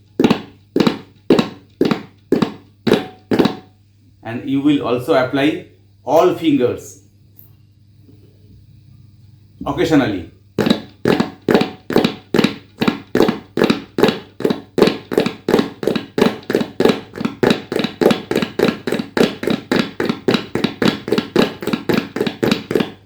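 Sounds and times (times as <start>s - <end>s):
tabla fast strokes: 0.0s - 3.8s, 10.6s - 23.0s.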